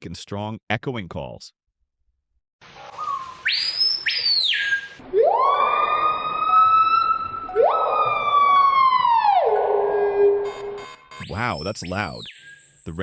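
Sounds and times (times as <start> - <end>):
bird whistled calls: 2.9 - 5.0, 11.2 - 13.0.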